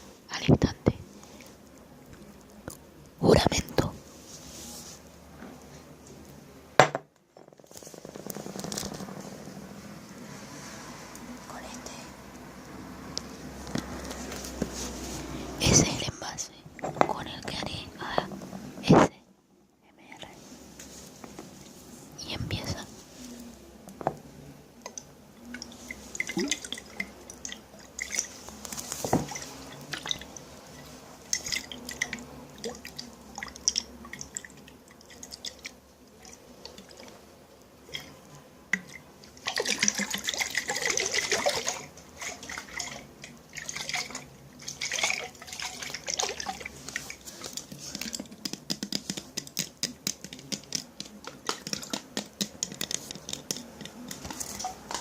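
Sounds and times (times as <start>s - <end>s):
water dripping and splashing: 24.8s - 37.1s, 38.7s - 55.0s.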